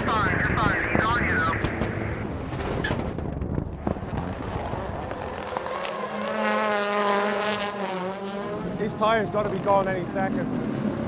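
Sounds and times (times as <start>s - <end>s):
racing car engines rumbling: 0.0s - 11.0s
exhaust pops and cracks: 1.6s - 4.4s.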